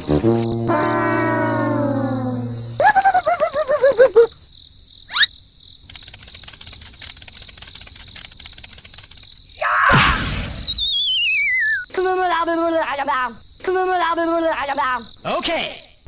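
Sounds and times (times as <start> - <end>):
wobbling falling tone: 0.0 - 3.6
falling warbling whistle: 0.4 - 3.6, 10.3 - 11.9
rising whistle: 0.5 - 3.2, 10.4 - 11.9
faint rapid clicking: 5.8 - 9.5.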